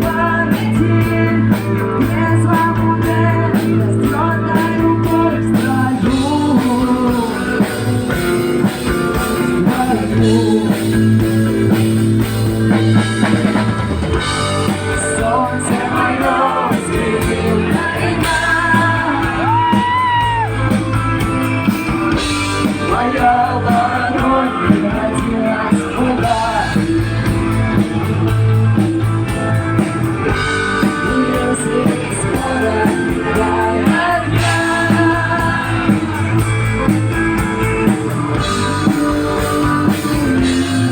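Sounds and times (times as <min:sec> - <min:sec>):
person singing: 0:00.0 - 0:12.8, 0:14.3 - 0:20.9, 0:21.6 - 0:27.4, 0:30.3 - 0:37.0, 0:38.3 - 0:40.9
drum kit: 0:00.0 - 0:40.9
electric guitar: 0:00.0 - 0:40.9.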